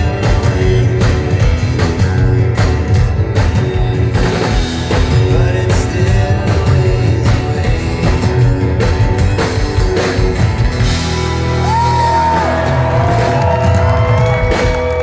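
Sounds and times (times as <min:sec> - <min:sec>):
person singing: 0:00.0 - 0:08.6
drum hits: 0:00.0 - 0:11.1, 0:11.7 - 0:15.0
live rock band playing: 0:00.0 - 0:15.0.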